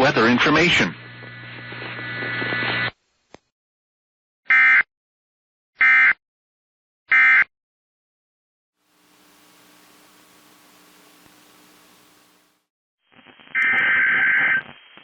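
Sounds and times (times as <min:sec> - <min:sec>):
steady hum: 0:08.8 - 0:12.7.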